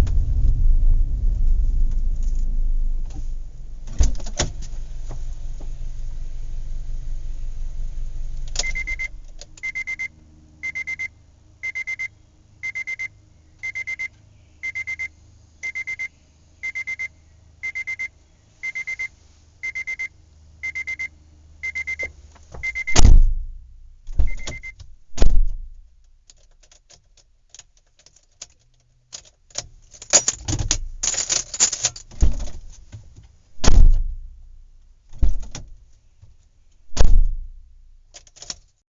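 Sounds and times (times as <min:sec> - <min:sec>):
faint low hum: 0:00.0 - 0:27.6, 0:29.5 - 0:38.2
car doors thumping shut: 0:03.0 - 0:06.0, 0:22.5 - 0:25.8, 0:32.1 - 0:32.7, 0:33.6 - 0:34.4, 0:35.1 - 0:35.8, 0:36.9 - 0:37.6
car warning chime beeping: 0:08.6 - 0:23.4, 0:24.3 - 0:24.8.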